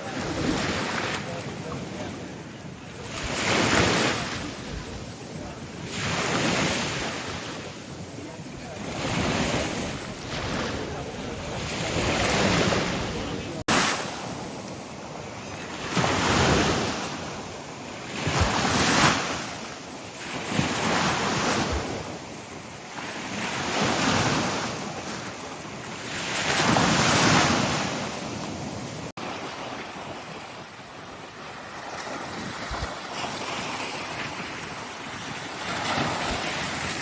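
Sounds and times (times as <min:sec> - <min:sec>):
waves washing ashore: 0:00.0 - 0:37.0
wind buffeting microphone: 0:00.0 - 0:37.0.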